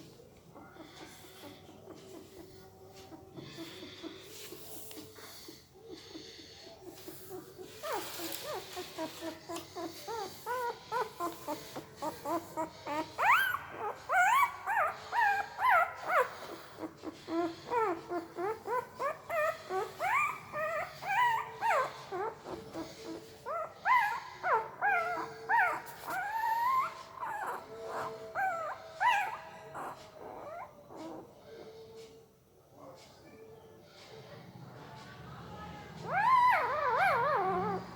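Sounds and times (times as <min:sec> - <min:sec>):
puppy whimpering and squeaking: 0:06.8 - 0:31.4, 0:36.0 - 0:37.9.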